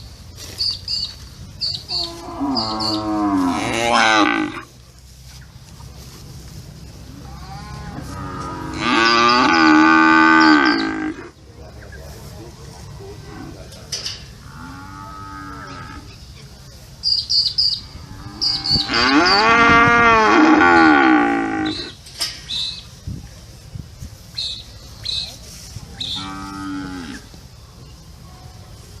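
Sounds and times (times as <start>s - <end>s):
cattle mooing: 2.0s - 4.6s, 7.2s - 11.3s, 18.0s - 21.9s, 26.1s - 27.2s.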